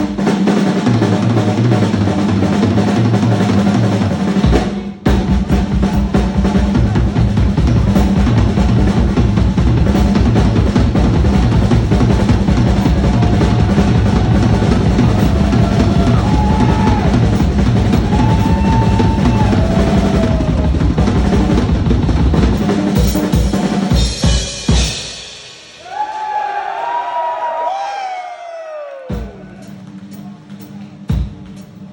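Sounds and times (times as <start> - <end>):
bass drum strokes: 0.0 - 25.1.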